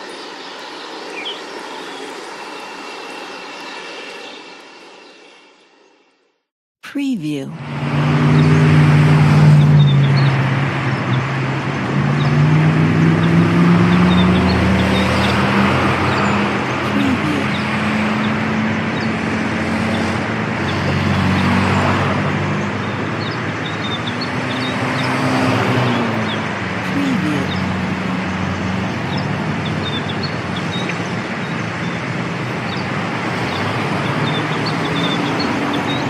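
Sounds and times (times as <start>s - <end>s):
low engine hum: 7.6s - 36.0s
traffic passing: 7.6s - 36.0s
small birds chirping: 32.7s - 36.0s.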